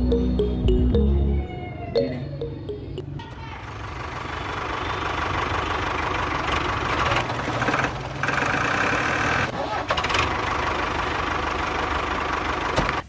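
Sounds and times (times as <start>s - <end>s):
small engine running: 3.9s - 12.7s.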